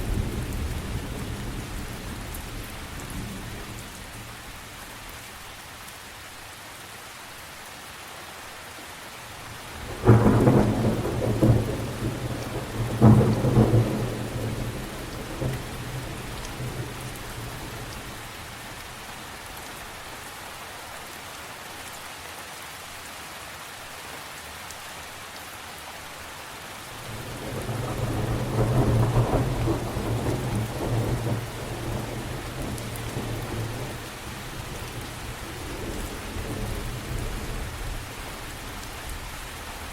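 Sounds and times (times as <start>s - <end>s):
steady rain: 0.0s - 39.9s
rolling thunder rumble: 9.7s - 18.5s, 27.1s - 39.4s
thunder claps: 9.9s - 18.0s, 27.1s - 38.0s.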